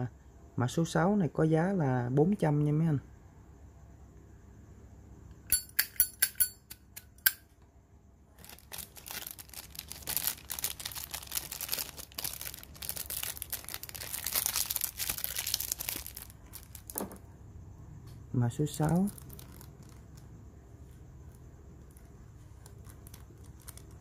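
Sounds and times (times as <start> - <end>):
lighter lid metallic clinks: 5.5 - 7.4
wrapper crinkling: 8.4 - 17.2, 18.7 - 20.4, 21.8 - 24.0.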